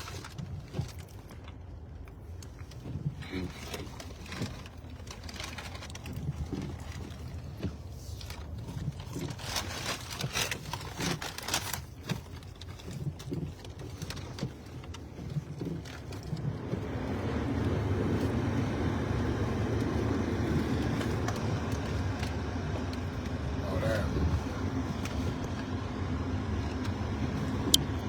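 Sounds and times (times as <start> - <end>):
clicks and rustles: 0.0 - 16.8
car driving low rumble: 0.0 - 28.0.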